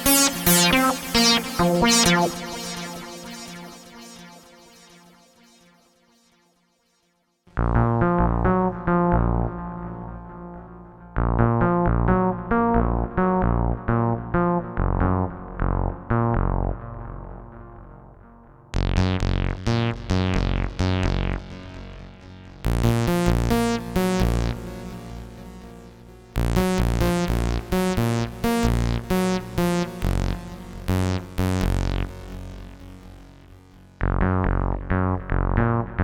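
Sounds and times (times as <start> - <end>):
synthesizer plucked notes: 0.0 - 6.2, 7.6 - 33.2.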